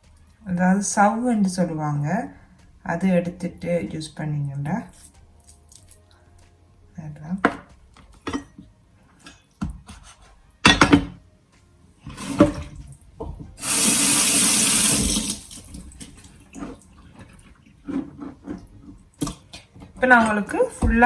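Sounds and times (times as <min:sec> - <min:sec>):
knocks and handling noises: 0:07.3 - 0:13.6, 0:14.8 - 0:21.0
kitchen tap running into sink: 0:12.1 - 0:21.0.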